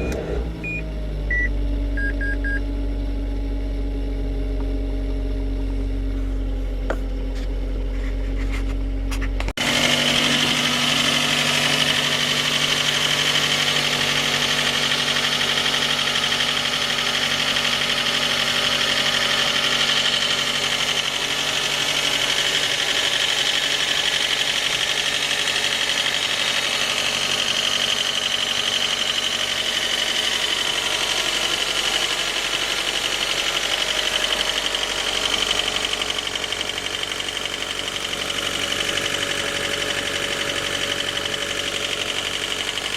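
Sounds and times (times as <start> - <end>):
short beeps: 0.0 - 2.6
car engine idling with knock: 4.4 - 42.9.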